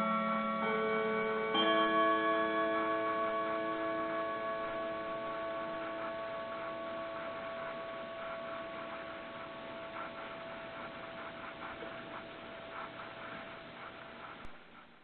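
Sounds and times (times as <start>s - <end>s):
clock chime tones: 0.0s - 9.2s
faint clock ticking: 0.0s - 15.0s.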